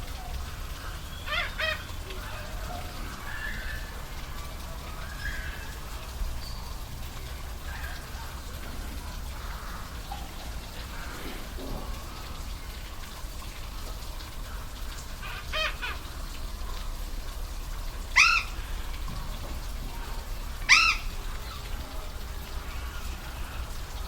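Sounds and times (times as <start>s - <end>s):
waterfall rushing: 0.0s - 16.7s
rising and falling animal calls: 18.1s - 18.6s, 20.6s - 21.2s.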